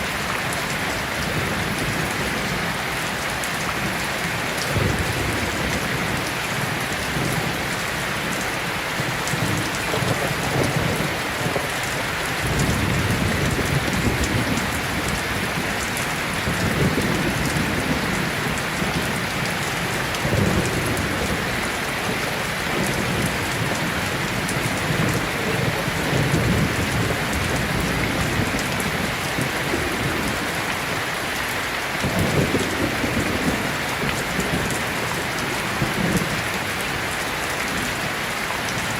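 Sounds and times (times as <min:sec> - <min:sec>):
steady rain falling: 0:00.0 - 0:38.9
low rolls of thunder: 0:09.0 - 0:19.4, 0:32.0 - 0:36.4.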